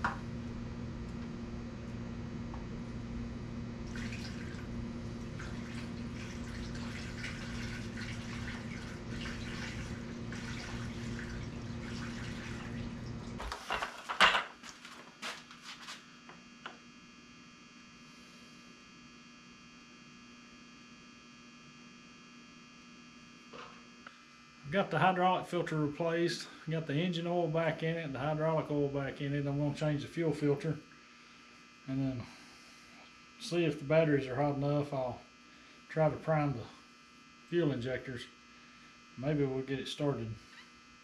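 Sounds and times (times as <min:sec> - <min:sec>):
electric hum: 0:00.0 - 0:41.0
liquid running: 0:03.8 - 0:13.5.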